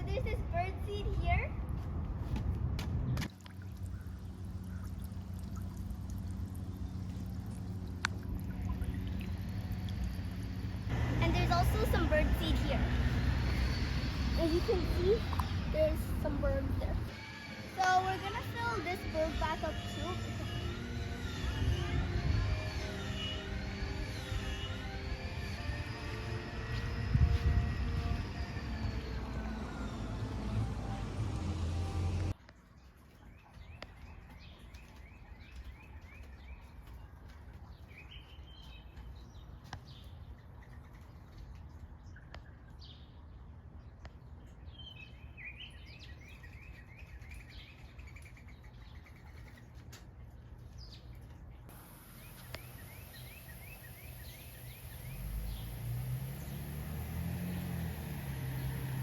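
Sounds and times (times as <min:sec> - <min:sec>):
low engine rumble: 0:00.0 - 0:17.2, 0:17.8 - 0:32.4, 0:49.1 - 0:59.0
small birds chirping: 0:08.1 - 0:17.1, 0:33.1 - 0:59.0.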